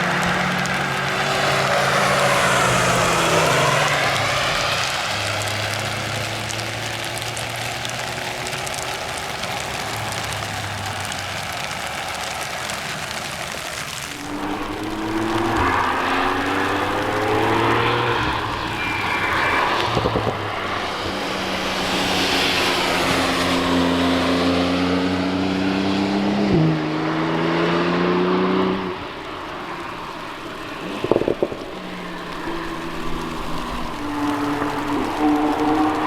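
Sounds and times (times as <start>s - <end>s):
car engine accelerating past: 0.0s - 6.0s, 14.2s - 29.2s
tyre and wind noise: 0.0s - 24.2s, 30.0s - 36.0s.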